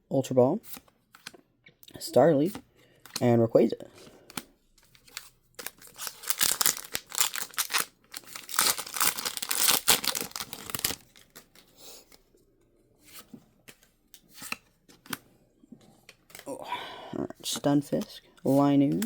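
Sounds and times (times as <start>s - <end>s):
foil wrapper tearing and crinkling: 5.0s - 11.5s.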